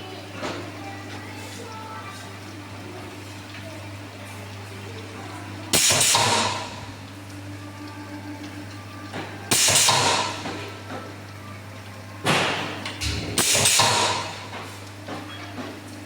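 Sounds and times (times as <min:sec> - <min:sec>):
welding machine humming: 0:00.0 - 0:16.0.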